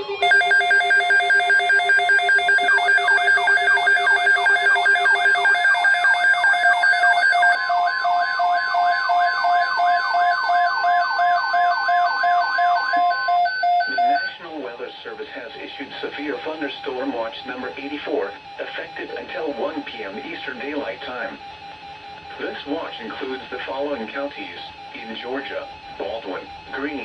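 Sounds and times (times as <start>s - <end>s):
pulsing alert beeps: 0.2s - 12.8s
steady electronic tone: 0.2s - 13.2s.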